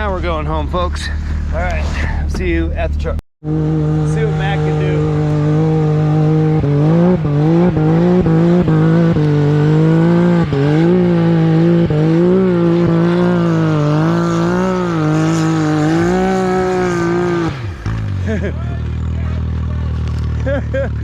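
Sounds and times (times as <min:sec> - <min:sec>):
utility vehicle engine revving: 0:00.0 - 0:21.0.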